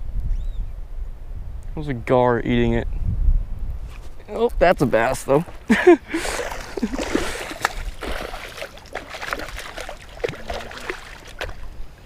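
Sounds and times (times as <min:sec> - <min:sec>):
water splashing and trickling: 0:06.0 - 0:12.0.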